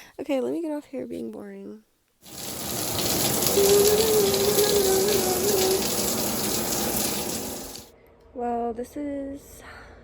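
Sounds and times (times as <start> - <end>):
shower water spraying: 2.2 - 7.9.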